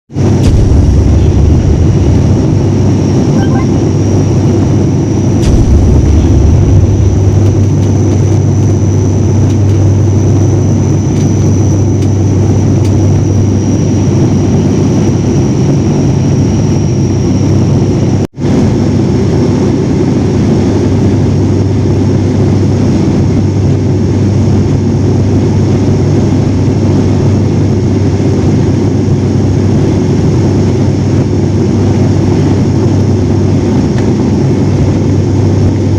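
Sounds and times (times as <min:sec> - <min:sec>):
propeller plane engines droning: 0:00.1 - 0:35.9
faint high whine: 0:00.2 - 0:17.9.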